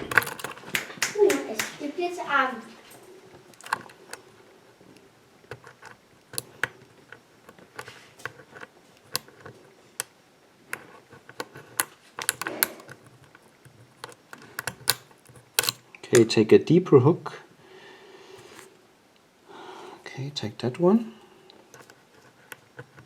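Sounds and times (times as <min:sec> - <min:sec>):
lock pick metallic clicks: 0:00.0 - 0:00.6, 0:03.5 - 0:04.2, 0:05.5 - 0:06.8, 0:09.0 - 0:10.1, 0:10.7 - 0:16.3.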